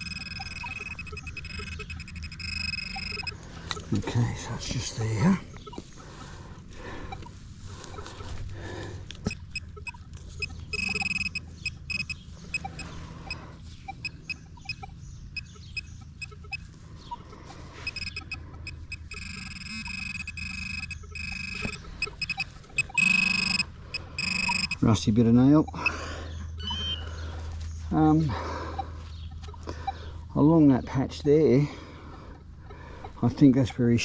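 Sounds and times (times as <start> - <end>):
metal detector high tone: 0.0 - 5.8, 9.2 - 16.7, 17.7 - 26.0.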